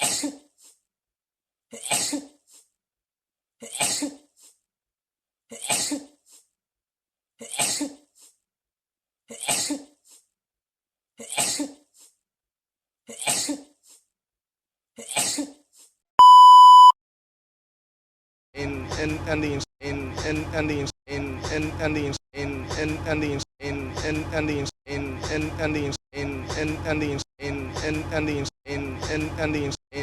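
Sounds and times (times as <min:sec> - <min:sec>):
person sneezing: 0:00.0 - 0:00.5, 0:01.8 - 0:02.4, 0:03.6 - 0:04.3, 0:05.5 - 0:06.2, 0:07.4 - 0:08.1, 0:09.3 - 0:10.0, 0:11.2 - 0:11.9, 0:13.1 - 0:13.8
loud electronic beep: 0:16.2 - 0:17.0.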